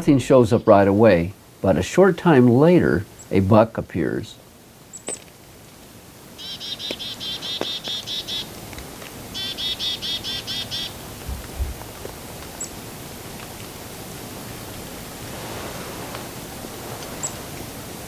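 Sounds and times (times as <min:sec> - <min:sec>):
songbird trilling: 0:06.4 - 0:08.5, 0:09.4 - 0:11.0.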